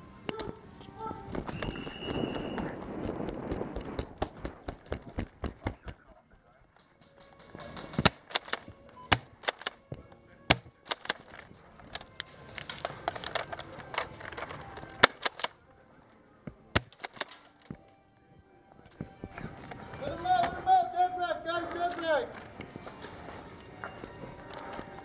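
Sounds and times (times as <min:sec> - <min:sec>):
rustling and movement: 0:00.0 - 0:25.0
airsoft guns firing: 0:06.8 - 0:09.9, 0:10.5 - 0:15.6, 0:16.7 - 0:17.8.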